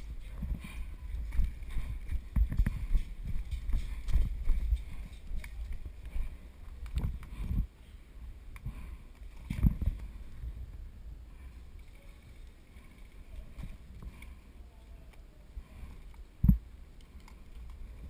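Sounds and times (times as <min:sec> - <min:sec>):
running footsteps: 0:00.0 - 0:07.6
wind rumble on microphone: 0:00.0 - 0:18.0.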